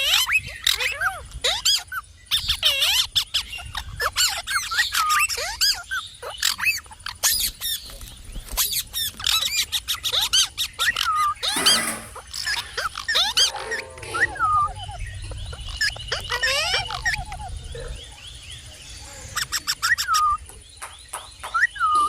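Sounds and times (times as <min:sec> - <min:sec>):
parakeet chirping and chattering: 0:08.6 - 0:18.0, 0:19.3 - 0:22.0
parakeet screech: 0:11.4 - 0:14.5.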